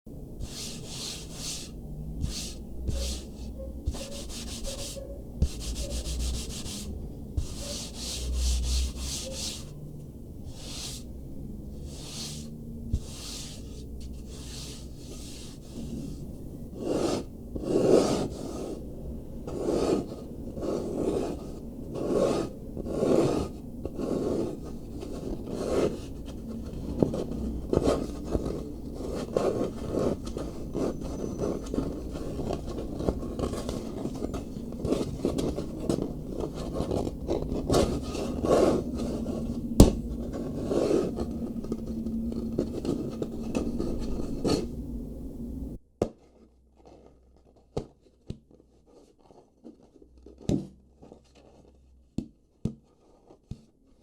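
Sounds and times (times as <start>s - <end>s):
hand sanding wooden surface: 0.4s - 9.8s, 10.4s - 11.1s, 11.8s - 16.2s, 19.5s - 44.8s.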